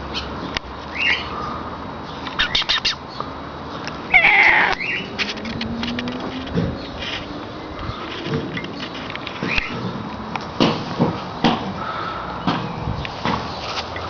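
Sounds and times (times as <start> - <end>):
cat crying: 4.1 - 5.1.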